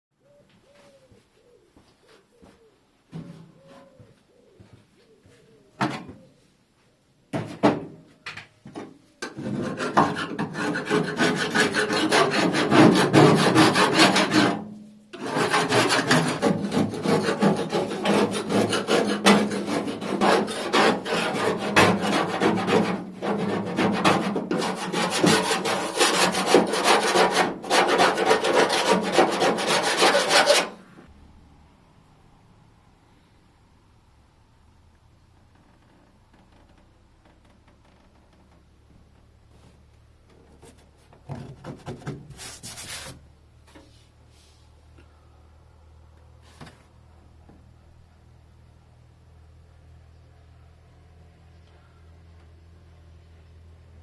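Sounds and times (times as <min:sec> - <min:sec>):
power tool scraping metal: 0:09.6 - 0:30.8.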